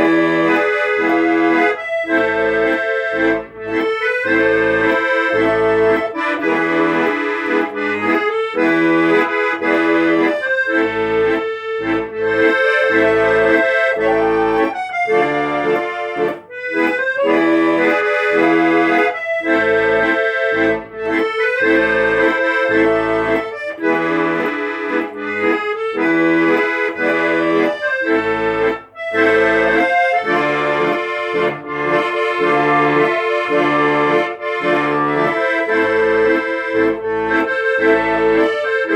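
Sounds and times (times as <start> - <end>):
accordion melody: 0.0 - 38.9
bass and chord accompaniment: 0.0 - 38.9.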